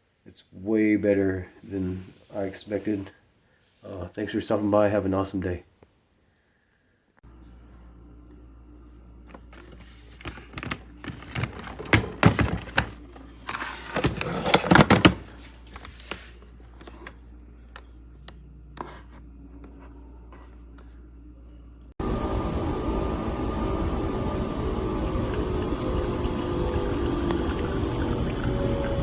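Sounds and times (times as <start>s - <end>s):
low steady hum: 7.2s - 29.0s
handling knocks and clicks: 9.3s - 19.8s.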